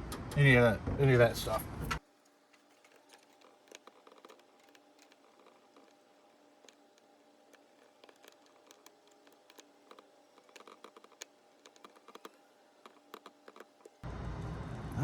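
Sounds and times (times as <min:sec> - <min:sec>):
screwdriver clicking: 0:02.6 - 0:06.0, 0:06.6 - 0:14.0.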